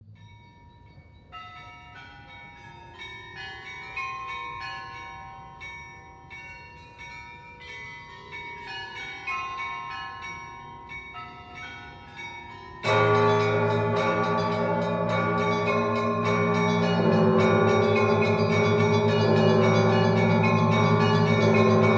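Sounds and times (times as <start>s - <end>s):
small church bells pealing: 0.0s - 21.9s
large deep bell: 7.0s - 21.9s.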